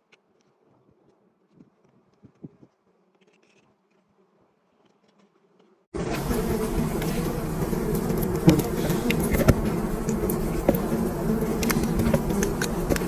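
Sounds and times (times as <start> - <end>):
swarm of bees buzzing: 6.0 - 13.0.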